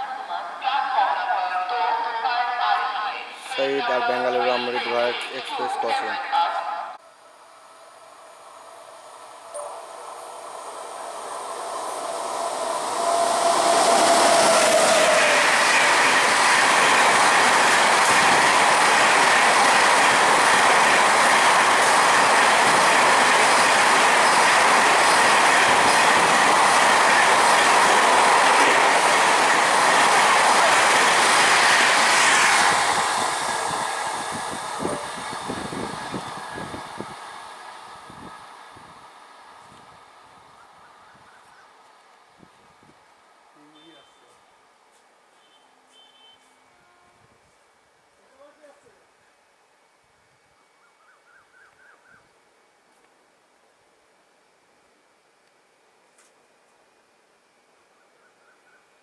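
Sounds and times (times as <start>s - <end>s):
train wheels rushing on rails: 7.6s - 40.5s.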